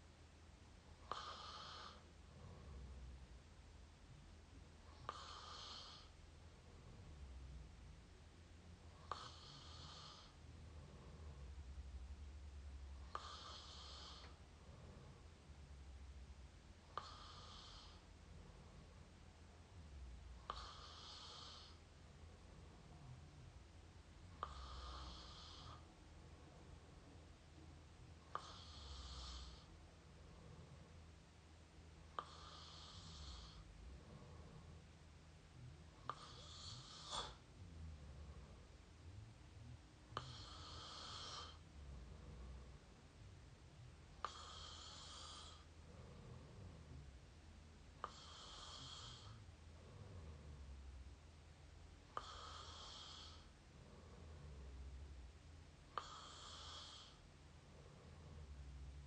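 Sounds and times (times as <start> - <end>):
person snoring: 1.0 - 3.0, 4.9 - 6.1, 8.9 - 11.6, 13.0 - 15.2, 16.9 - 18.0, 20.4 - 21.8, 24.3 - 25.9, 28.2 - 29.7, 32.2 - 34.8, 35.6 - 39.3, 40.2 - 42.8, 44.2 - 47.2, 48.0 - 51.0, 52.1 - 55.1, 55.9 - 57.2.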